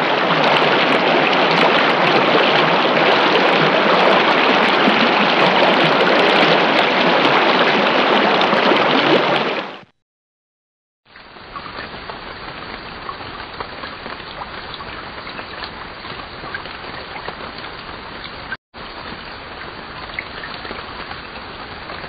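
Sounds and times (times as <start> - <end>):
running water rushing: 0.0 - 9.9.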